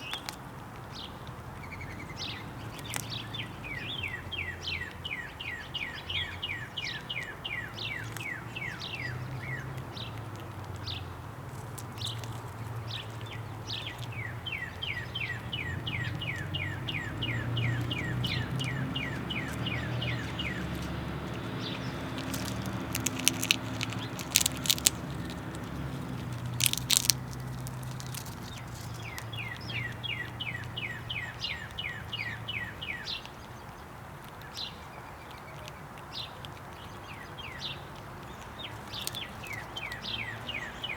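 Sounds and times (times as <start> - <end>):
songbird trilling: 12.0 - 33.4.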